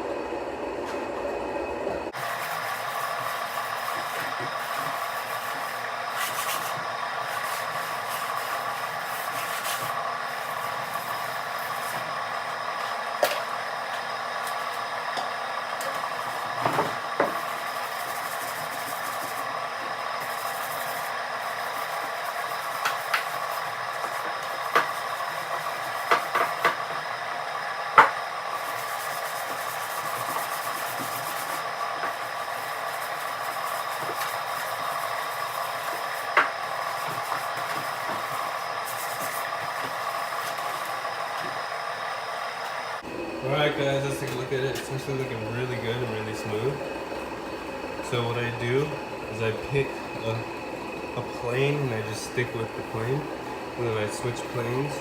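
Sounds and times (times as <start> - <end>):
hand sanding rubbing: 2.2 - 12.2, 15.9 - 27.0, 28.6 - 41.6.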